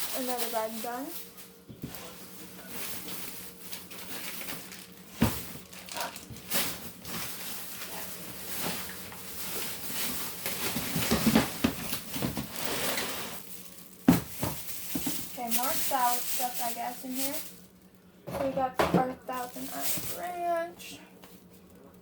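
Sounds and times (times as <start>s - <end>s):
plastic bags rustling: 0.0s - 22.0s.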